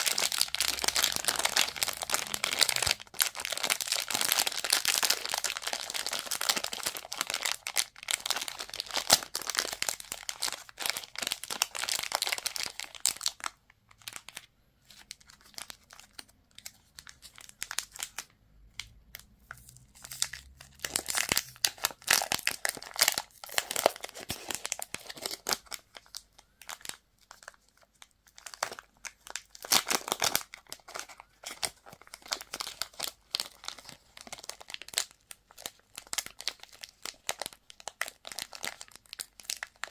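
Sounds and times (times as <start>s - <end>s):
candy wrappers crinkling: 0.0s - 39.9s.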